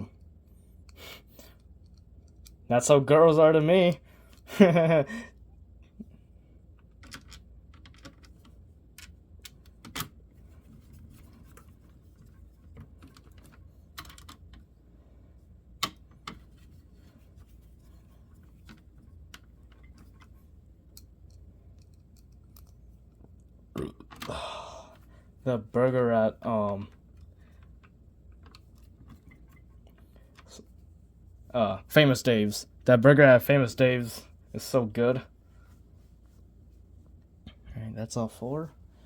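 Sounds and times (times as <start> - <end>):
plastic and metal parts clicking: 12.7 - 14.7.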